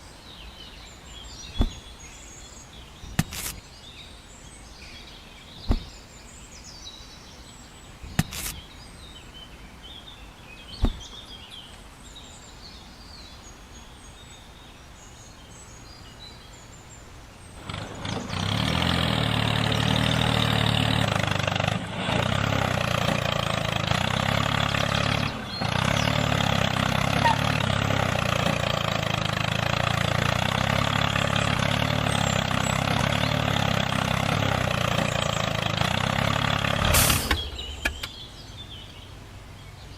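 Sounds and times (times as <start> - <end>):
birds chirping: 0.0 - 39.9
sharp knocks: 1.6 - 1.8, 5.6 - 6.0, 10.8 - 11.1.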